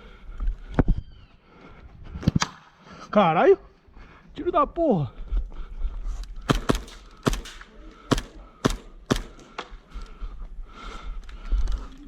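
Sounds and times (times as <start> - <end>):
airsoft pistol shots: 6.5 - 9.5.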